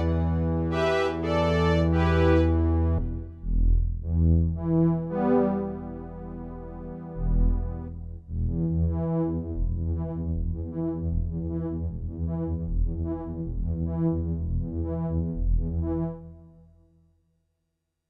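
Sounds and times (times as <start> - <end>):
synthesizer bass and chords: 0.0 - 11.9.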